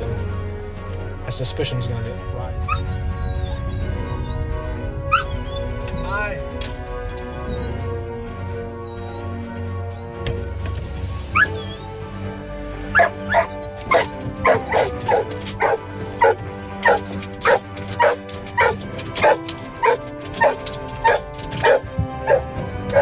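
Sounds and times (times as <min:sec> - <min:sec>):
background music: 0:00.0 - 0:23.0
dog barking: 0:05.1 - 0:05.4, 0:11.4 - 0:11.8, 0:12.9 - 0:23.0.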